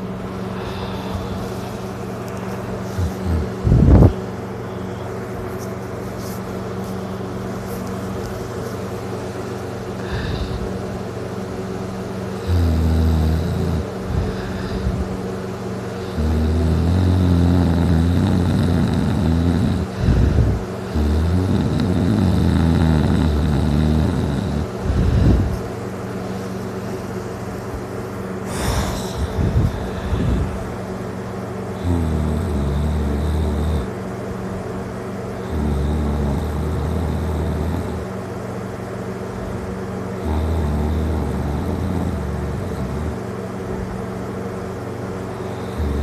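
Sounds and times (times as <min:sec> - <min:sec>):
steady low hum: 0:00.0 - 0:46.0
loud snorts: 0:02.8 - 0:04.2, 0:12.3 - 0:15.0, 0:15.9 - 0:25.6, 0:28.5 - 0:30.8, 0:31.7 - 0:34.0, 0:35.4 - 0:38.2, 0:40.1 - 0:43.3, 0:45.4 - 0:46.0
man snoring: 0:02.9 - 0:04.2, 0:10.0 - 0:10.8, 0:12.3 - 0:15.1, 0:15.9 - 0:25.6, 0:28.5 - 0:30.8, 0:31.7 - 0:34.0, 0:35.4 - 0:38.1, 0:40.2 - 0:43.3, 0:45.4 - 0:46.0.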